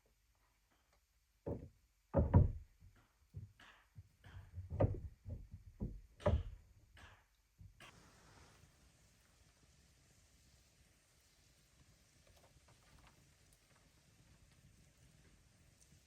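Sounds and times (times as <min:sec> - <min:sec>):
knocks and thuds: 0:01.4 - 0:07.8.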